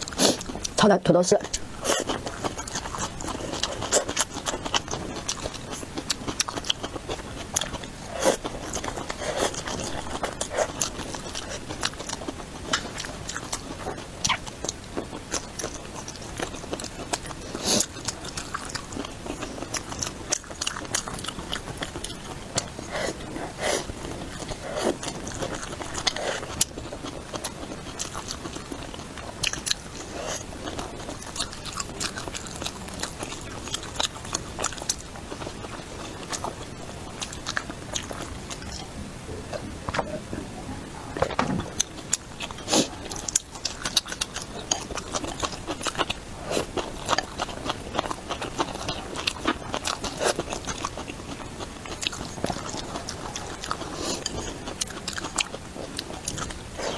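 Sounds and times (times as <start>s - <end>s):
person chewing crisply: 0.0s - 0.8s, 1.5s - 38.9s, 41.3s - 56.9s
wet mouth sounds: 41.2s - 44.0s.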